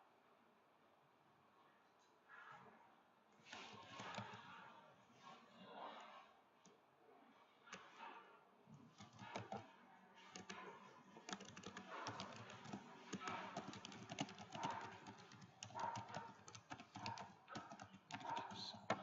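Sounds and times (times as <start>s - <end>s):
typing on computer keyboard: 3.5s - 4.6s, 8.8s - 19.0s.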